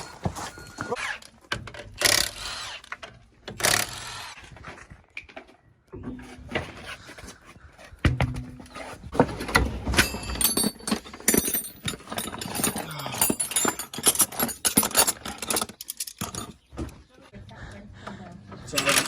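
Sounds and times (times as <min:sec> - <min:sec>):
metal tools clanking: 0:08.1 - 0:17.2, 0:18.6 - 0:19.0
ringing metallic clinks: 0:10.0 - 0:16.6.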